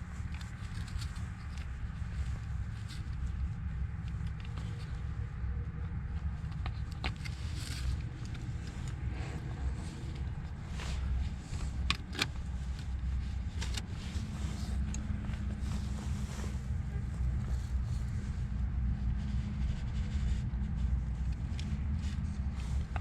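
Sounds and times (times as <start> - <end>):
steady low rumble: 0.0 - 23.0
small clicks and knocks of parts: 0.2 - 1.7.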